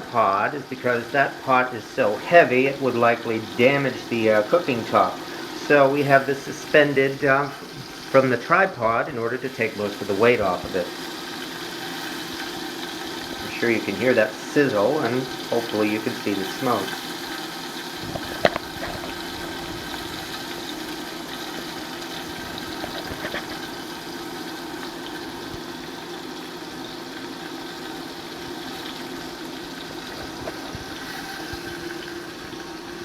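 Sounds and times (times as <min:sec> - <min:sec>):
chicken sizzling in a pot: 0:00.0 - 0:33.0
cooling fan humming: 0:00.0 - 0:33.0.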